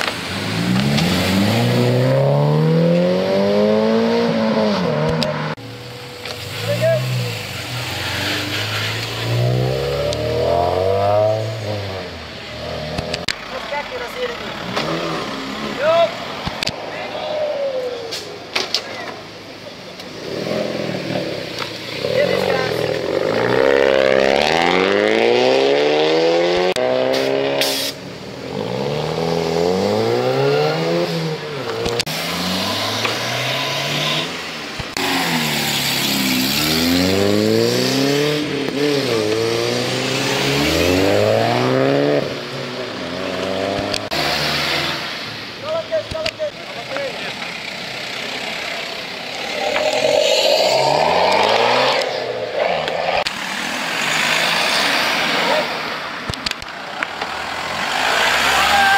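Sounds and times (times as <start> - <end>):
car engine accelerating: 0.0 - 16.8, 20.0 - 45.6, 46.4 - 58.9
short sharp hiss: 27.2 - 28.0.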